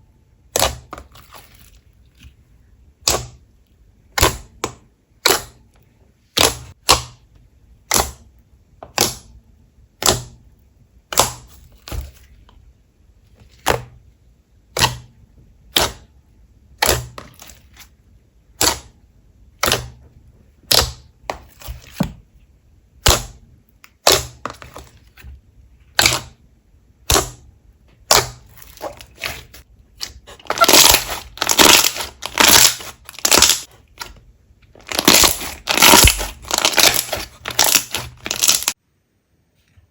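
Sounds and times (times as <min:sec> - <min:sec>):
slime popping: 0:28.0 - 0:38.8.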